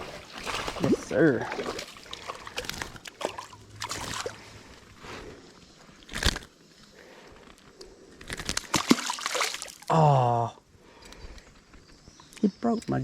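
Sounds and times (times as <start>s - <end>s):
creek water splashing: 0.0s - 5.1s, 8.3s - 10.0s.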